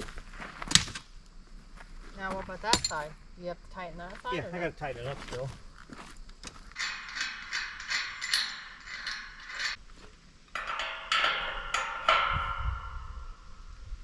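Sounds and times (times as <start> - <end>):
ringing metallic clanks: 6.8 - 9.8, 10.5 - 13.8
sharp metal taps: 6.8 - 9.8, 10.5 - 13.4.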